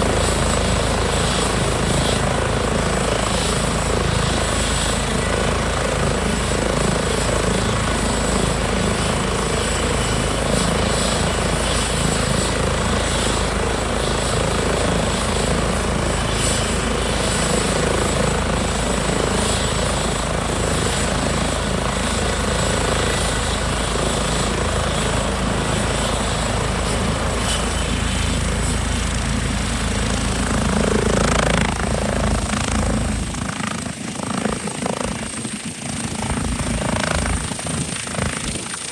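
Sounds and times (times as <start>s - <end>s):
helicopter rotor beat: 0.0s - 38.9s
helicopter turbine whine: 0.0s - 38.9s.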